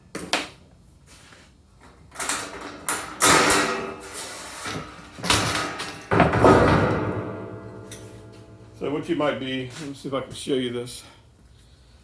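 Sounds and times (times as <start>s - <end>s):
metal scraping and clattering: 2.2s - 9.3s
metal sheet ringing: 5.4s - 9.5s.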